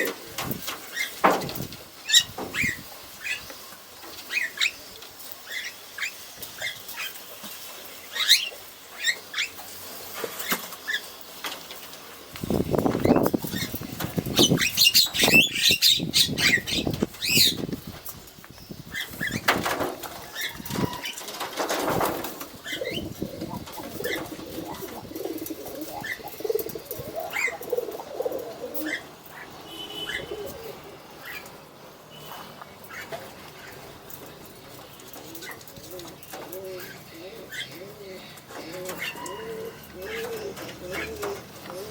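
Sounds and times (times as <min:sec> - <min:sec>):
pigeons cooing: 0:00.0 - 0:01.4, 0:12.5 - 0:17.8, 0:18.9 - 0:31.8, 0:32.9 - 0:41.9
pigeon wings flapping: 0:21.1 - 0:27.8.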